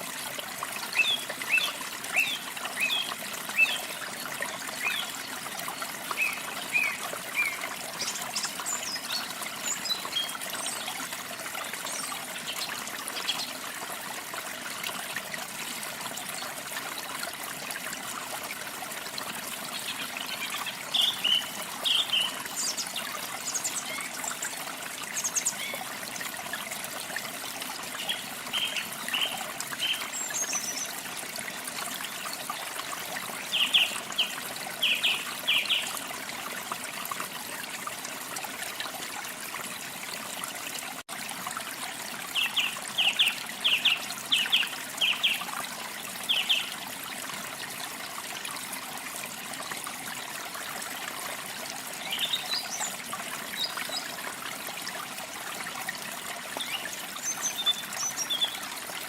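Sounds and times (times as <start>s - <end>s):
running water trickling: 0.0s - 59.0s
small birds chirping: 56.6s - 58.6s.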